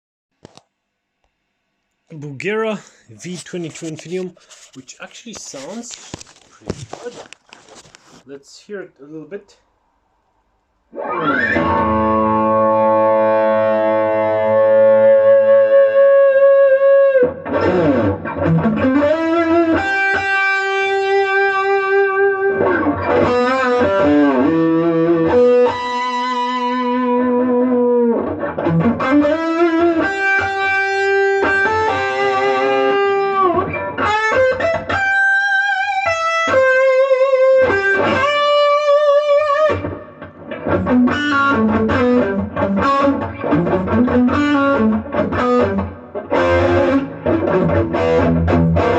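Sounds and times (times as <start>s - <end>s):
electric guitar lead lines: 10.8s - 48.9s.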